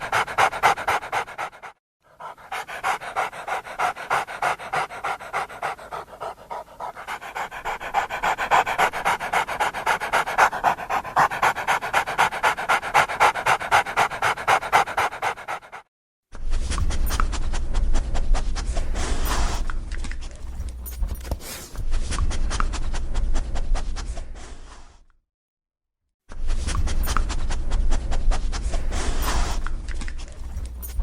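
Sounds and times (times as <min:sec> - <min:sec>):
dog panting: 0:00.0 - 0:15.9, 0:16.8 - 0:19.7, 0:20.4 - 0:21.8, 0:26.8 - 0:31.0.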